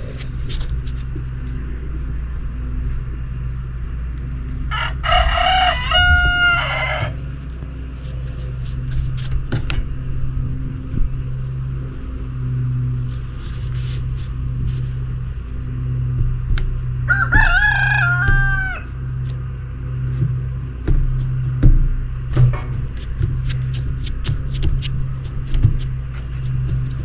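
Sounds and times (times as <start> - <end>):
steady low hum: 0.0 - 27.0
rooster crowing: 4.6 - 7.8, 16.8 - 19.2
sharp knocks: 13.0 - 19.5, 20.1 - 27.0.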